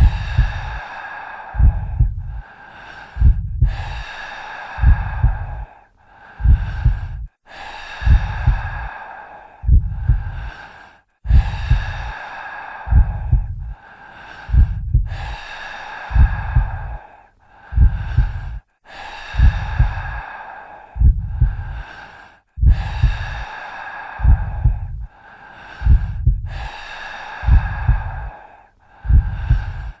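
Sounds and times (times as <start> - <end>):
heartbeat thumps: 0.0 - 0.8, 1.6 - 2.4, 3.2 - 4.1, 4.8 - 5.6, 6.4 - 7.4, 8.0 - 8.9, 9.6 - 10.5, 11.3 - 12.1, 12.9 - 13.8, 14.5 - 15.4, 16.1 - 17.0, 17.7 - 18.6, 19.4 - 20.2, 21.0 - 21.8, 22.6 - 23.4, 24.2 - 25.1, 25.8 - 26.7, 27.4 - 28.3, 29.0 - 30.0
slow breathing: 0.0 - 30.0.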